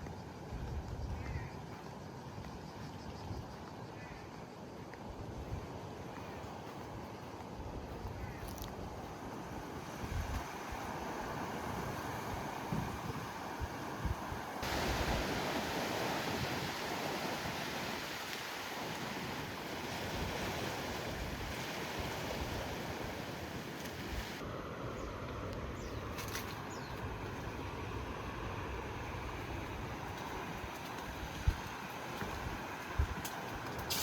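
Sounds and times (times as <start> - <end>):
wind buffeting microphone: 5.1 - 24.4, 29.2 - 34.0
ocean surf washing on shore: 9.0 - 24.4, 27.0 - 34.0.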